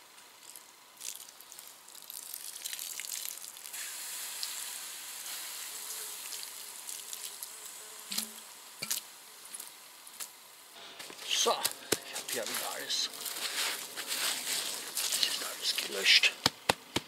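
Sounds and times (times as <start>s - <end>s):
embers hissing and sizzling: 0.0s - 16.3s.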